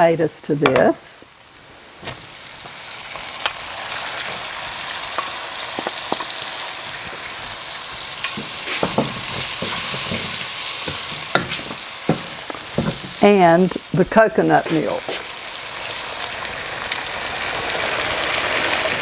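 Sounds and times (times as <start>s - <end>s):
tomatoes sizzling in hot oil: 0.0s - 19.0s
spoon clicking and scraping pan: 8.2s - 13.8s.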